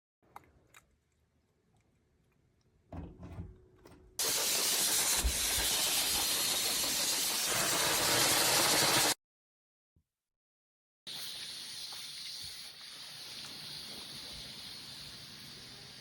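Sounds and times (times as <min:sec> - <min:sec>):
steam mop hissing: 0:04.2 - 0:09.2, 0:11.1 - 0:16.0.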